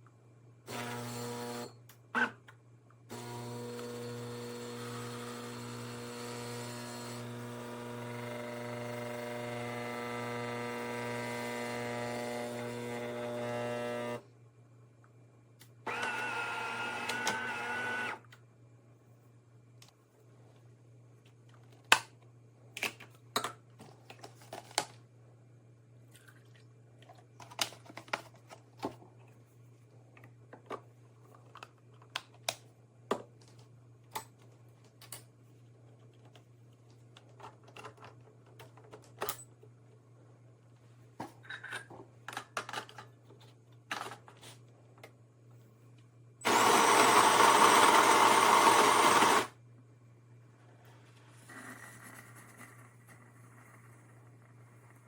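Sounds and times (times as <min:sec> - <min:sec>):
loud machine whirr: 0:46.5 - 0:49.5.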